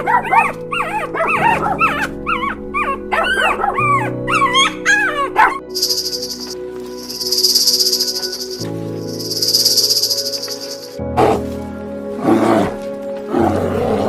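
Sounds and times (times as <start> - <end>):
background music: 0.0 - 14.0
high steady buzzing: 5.8 - 11.0.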